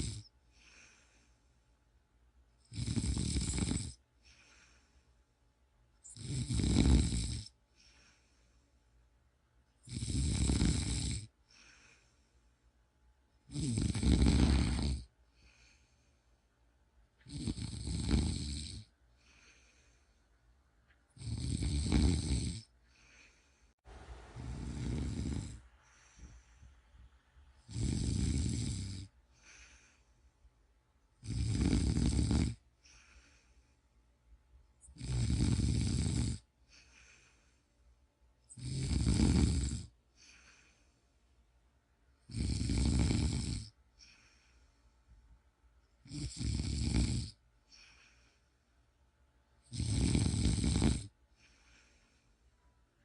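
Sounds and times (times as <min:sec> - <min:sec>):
person snoring: 0:00.0 - 0:01.2, 0:02.6 - 0:04.8, 0:06.0 - 0:08.2, 0:09.8 - 0:12.1, 0:13.5 - 0:15.9, 0:17.2 - 0:19.9, 0:21.2 - 0:23.4, 0:24.3 - 0:26.4, 0:27.6 - 0:30.0, 0:31.2 - 0:33.5, 0:34.8 - 0:37.3, 0:38.5 - 0:40.8, 0:42.3 - 0:44.4, 0:46.0 - 0:48.2, 0:49.6 - 0:52.0
faint breaths: 0:00.0 - 0:02.0, 0:03.9 - 0:06.2, 0:07.4 - 0:09.2, 0:11.3 - 0:13.0, 0:13.9 - 0:16.8, 0:18.8 - 0:21.1, 0:22.6 - 0:31.1, 0:32.5 - 0:35.0, 0:36.4 - 0:38.3, 0:39.8 - 0:41.6, 0:43.7 - 0:46.0, 0:47.3 - 0:49.1, 0:51.0 - 0:53.0.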